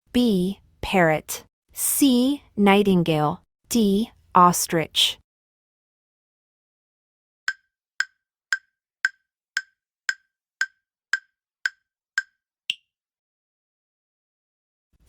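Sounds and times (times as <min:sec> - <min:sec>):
countdown timer ticks: 0:07.5 - 0:12.9.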